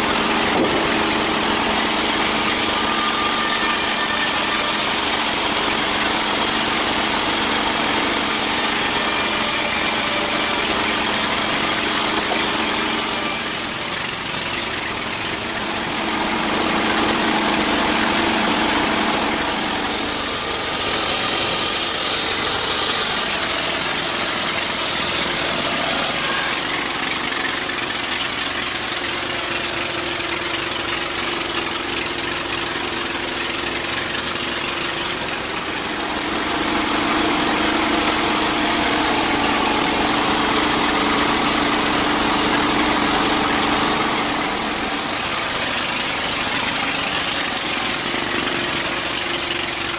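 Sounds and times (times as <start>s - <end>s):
sawmill machinery engine drone: 0.0s - 49.9s
broad hiss: 19.5s - 29.5s.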